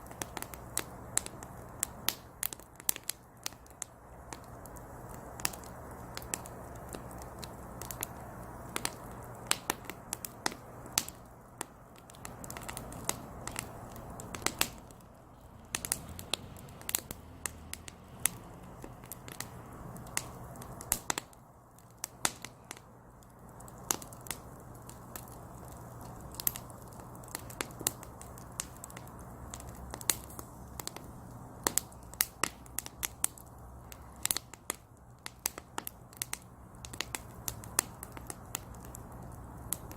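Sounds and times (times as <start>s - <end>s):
burning wood crackling and popping: 0.0s - 39.9s
fire hissing: 0.0s - 39.9s.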